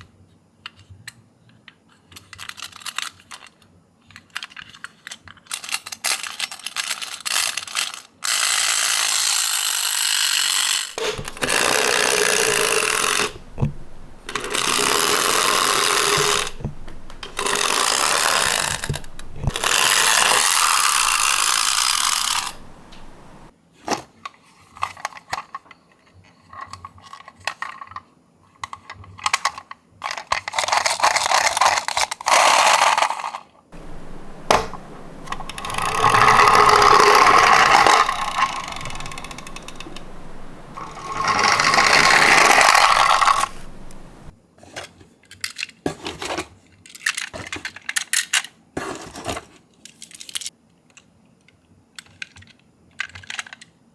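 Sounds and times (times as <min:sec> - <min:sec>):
clicks and knocks of toy cars: 0:00.6 - 0:08.6, 0:10.3 - 0:24.1, 0:26.5 - 0:53.8
toy cars rolling down track: 0:04.4 - 0:23.5, 0:33.8 - 0:44.3.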